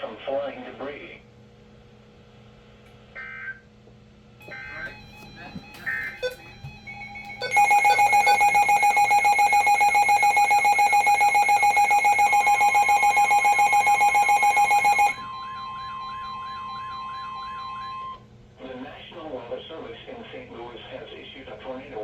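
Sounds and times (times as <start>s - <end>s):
pulsing electronic alert tone: 5.9s - 18.2s.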